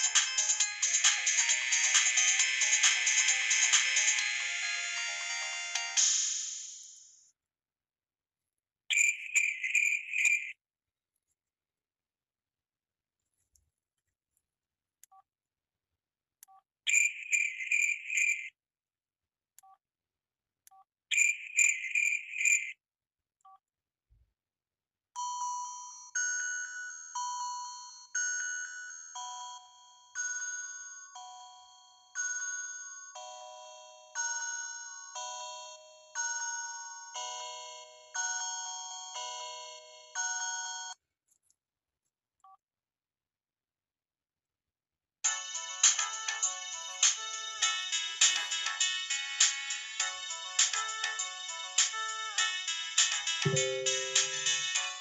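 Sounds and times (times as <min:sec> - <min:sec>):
melodic ringtone: 0:00.0 - 0:06.3, 0:45.3 - 0:55.0
pulsing trill ringtone: 0:00.0 - 0:06.9, 0:45.3 - 0:55.0
short phone beeps: 0:53.5 - 0:54.6.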